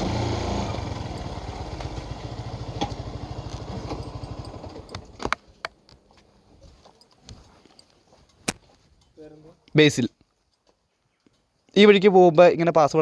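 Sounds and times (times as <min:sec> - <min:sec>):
motorcycle engine idling: 0:00.0 - 0:05.2.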